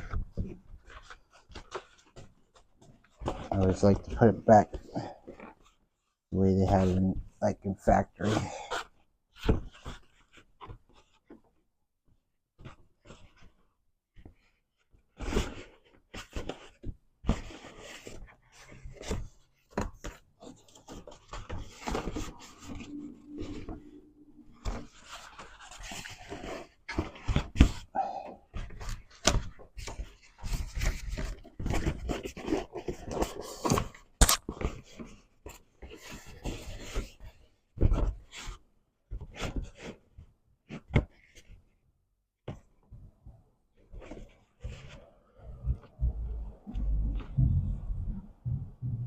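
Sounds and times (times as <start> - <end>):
plastic parts rustling and scraping: 0.0 - 7.0, 12.6 - 41.8.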